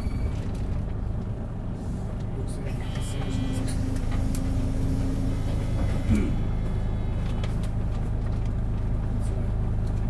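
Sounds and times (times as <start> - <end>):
bus diesel engine drone: 0.0 - 10.0
thin whine: 2.6 - 8.0.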